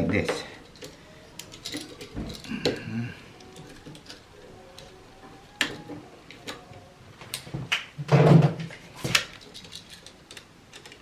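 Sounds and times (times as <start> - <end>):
tools clattering: 0.6 - 2.8.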